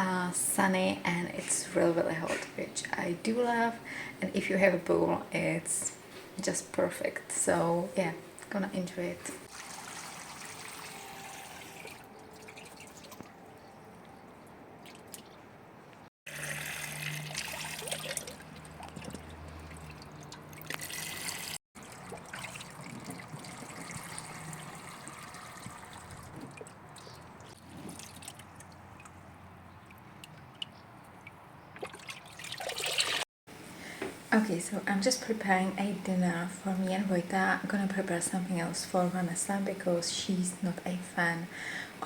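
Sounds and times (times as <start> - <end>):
water trickling and dripping: 9.4 - 15.4, 16.3 - 33.2
small water splashes: 16.3 - 33.2.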